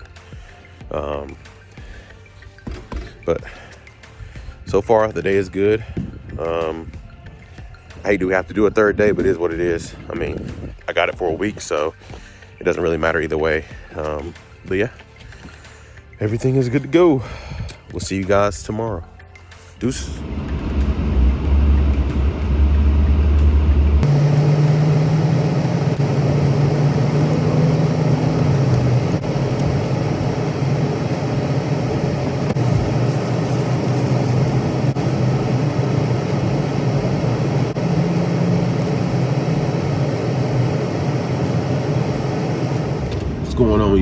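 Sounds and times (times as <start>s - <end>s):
vehicle engine droning: 20.0s - 44.0s.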